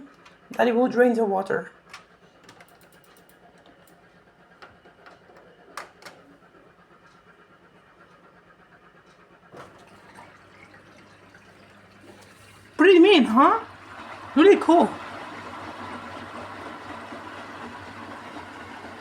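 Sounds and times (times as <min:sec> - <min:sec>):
drain pump humming: 0:09.5 - 0:19.0.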